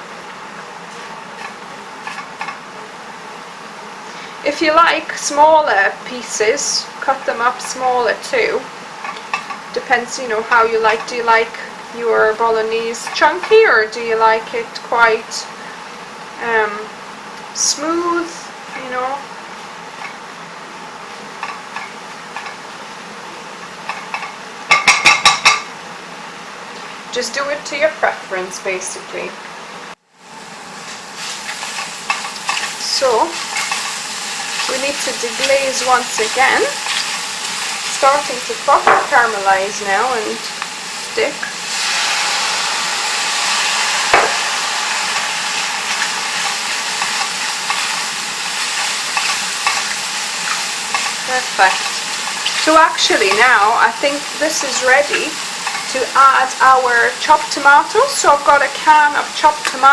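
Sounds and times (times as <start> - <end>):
vegetables sizzling in a frying pan: 0.0 - 25.7, 30.0 - 59.9
spoon stirring and scraping: 1.4 - 2.6, 31.5 - 38.0, 45.1 - 56.0
utensil knocking on pan: 38.8 - 39.2, 44.1 - 44.4.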